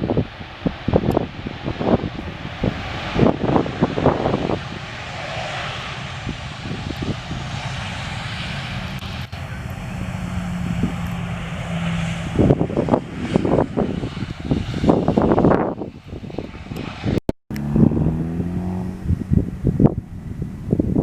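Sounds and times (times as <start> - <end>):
jet engines running: 0.0 - 21.0
wind buffeting microphone: 0.0 - 21.0
steady low tone: 17.5 - 21.0.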